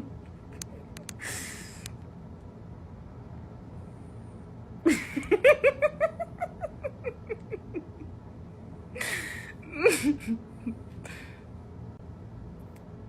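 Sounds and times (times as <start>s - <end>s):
person laughing hard: 4.9s - 8.1s, 9.0s - 11.3s.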